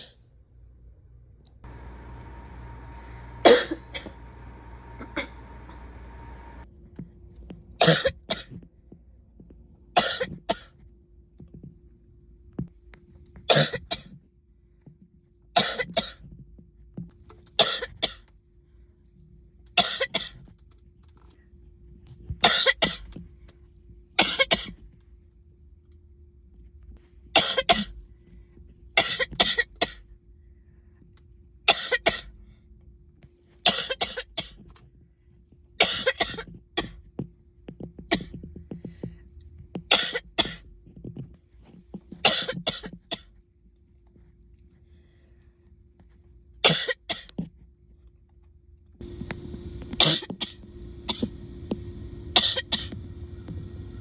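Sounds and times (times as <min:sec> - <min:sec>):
faint steady hum: 0:00.0 - 0:54.0
person coughing: 0:03.4 - 0:04.2, 0:05.0 - 0:05.4, 0:07.8 - 0:08.6, 0:10.0 - 0:10.7, 0:13.5 - 0:14.2, 0:15.6 - 0:16.2, 0:17.6 - 0:18.2, 0:19.8 - 0:20.4, 0:22.4 - 0:23.1, 0:24.2 - 0:24.8, 0:27.4 - 0:28.0, 0:29.0 - 0:30.0, 0:31.7 - 0:32.3, 0:33.6 - 0:34.6, 0:35.8 - 0:37.0, 0:39.9 - 0:40.6, 0:42.2 - 0:43.3, 0:46.6 - 0:47.3, 0:50.0 - 0:51.3, 0:52.4 - 0:53.0.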